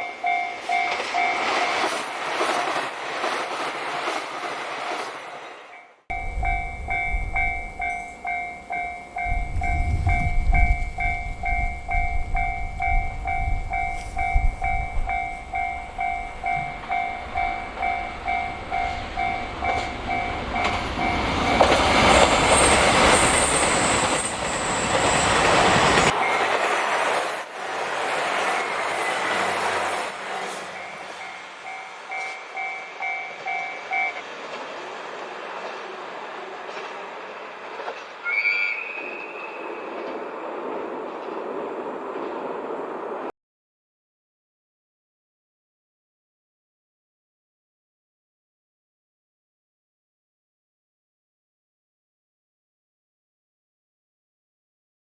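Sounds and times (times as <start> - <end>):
diesel train passing: 0.0 - 43.3
level-crossing alarm dinging: 6.1 - 34.3.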